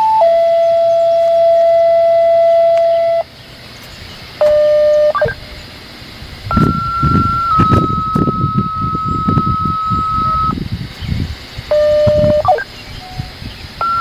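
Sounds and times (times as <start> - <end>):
low rumbling: 0.0 - 14.0
radio paging tones: 4.4 - 5.5, 6.5 - 10.6, 11.7 - 14.0.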